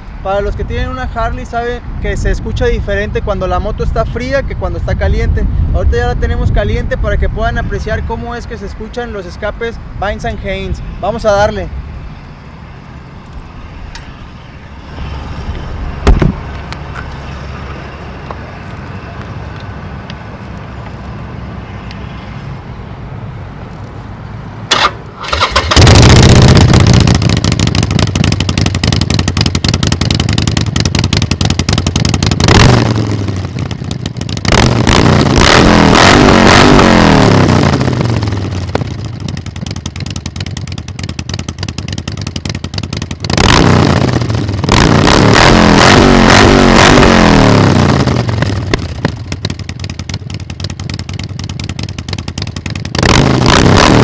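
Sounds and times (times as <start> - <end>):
motorcycle engine idling and revving: 10.8 - 22.5, 24.5 - 54.0
exhaust pop: 16.0 - 16.5, 47.9 - 54.0.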